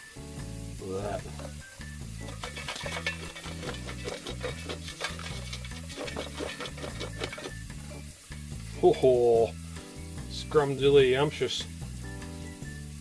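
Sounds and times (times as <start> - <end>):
background music: 0.0 - 13.0
food sizzling and crackling: 0.0 - 13.0
man exclaiming: 0.8 - 1.3.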